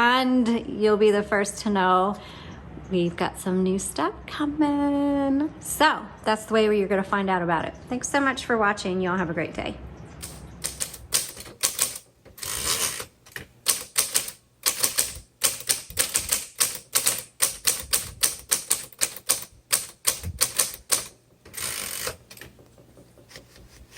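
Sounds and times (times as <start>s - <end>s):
typewriter key strikes: 10.2s - 13.1s, 13.7s - 22.6s
typewriter rasping: 10.2s - 23.9s.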